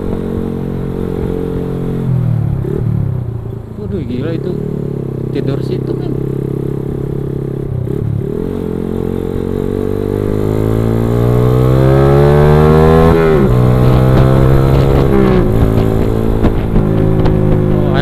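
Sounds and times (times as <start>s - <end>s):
motorcycle engine accelerating: 0.0s - 18.0s.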